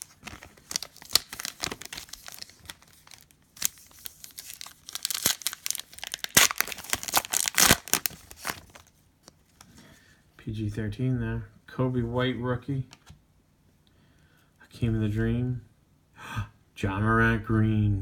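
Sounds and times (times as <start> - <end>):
plastic wrappers tearing and crinkling: 0.0 - 8.9.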